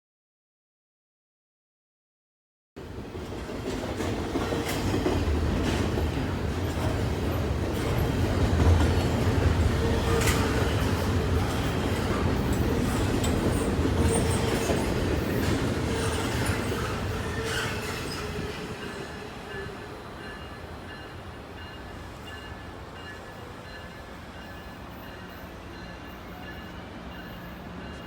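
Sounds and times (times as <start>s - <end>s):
train rumble and rail noise: 2.8s - 28.0s
wheel squeal: 12.8s - 19.2s.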